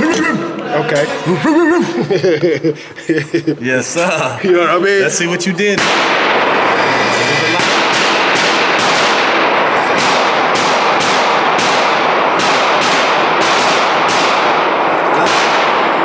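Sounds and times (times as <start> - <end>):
gunshots in quick succession: 5.8 - 16.0.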